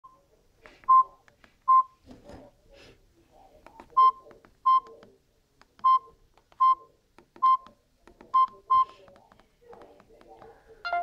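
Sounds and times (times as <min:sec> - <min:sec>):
phone keypad beeping: 0:05.8 - 0:09.0.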